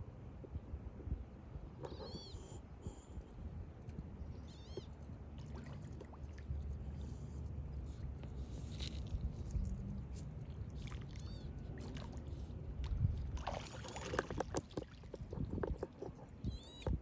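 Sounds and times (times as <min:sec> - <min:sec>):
steady low rumble: 0:02.6 - 0:13.6
water splashing and sloshing: 0:04.7 - 0:17.0.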